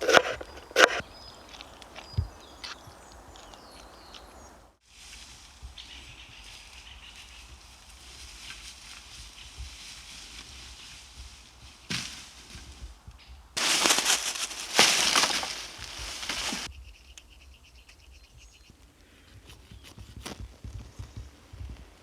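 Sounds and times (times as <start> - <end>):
dry wood crackling and popping: 0.0 - 4.4, 12.8 - 17.3.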